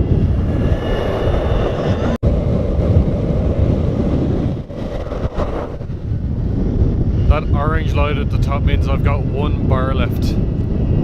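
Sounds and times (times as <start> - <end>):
skateboard road rumble: 0.0 - 8.8
wind noise on microphone: 0.0 - 11.0.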